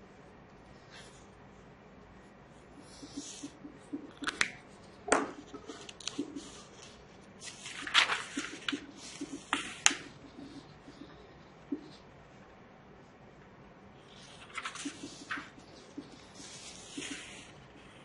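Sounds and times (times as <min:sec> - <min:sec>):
paper rustling: 0:03.0 - 0:11.1, 0:14.1 - 0:18.0.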